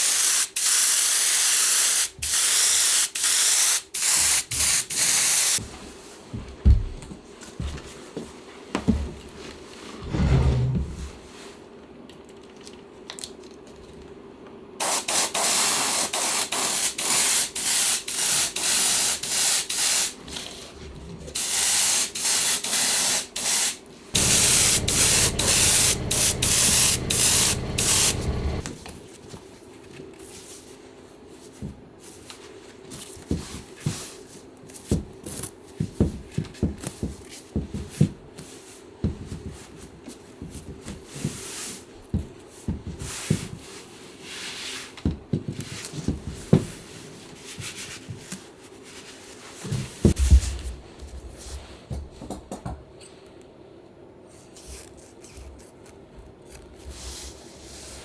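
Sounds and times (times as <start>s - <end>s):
spray hissing in bursts: 24.2s - 28.6s.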